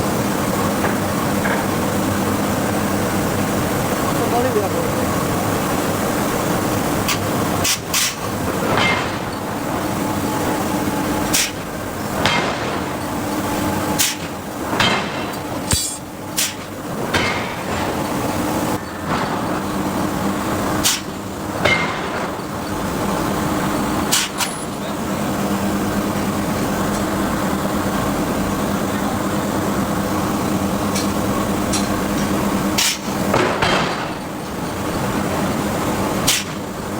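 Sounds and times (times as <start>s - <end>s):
forging hammers machinery noise: 0.0s - 36.9s
sharp metallic knocks: 14.8s - 16.6s.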